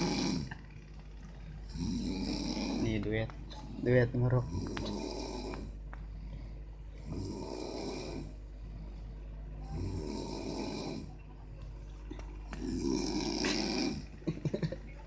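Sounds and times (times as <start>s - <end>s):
people snoring: 0.0s - 0.6s, 1.6s - 8.4s, 9.6s - 11.2s, 12.5s - 14.4s
steady low hum: 0.0s - 15.0s.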